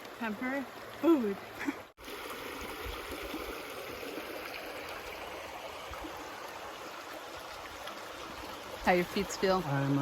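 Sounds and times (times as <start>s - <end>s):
creek water flowing: 0.0s - 10.0s.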